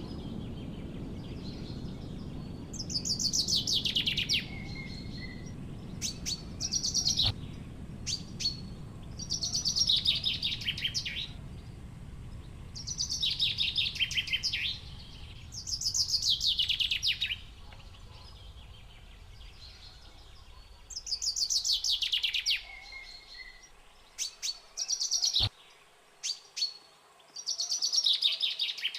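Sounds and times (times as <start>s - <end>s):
low steady hum: 0.0s - 22.2s
bird chirps: 0.0s - 26.8s
small bird singing trills: 0.0s - 28.9s.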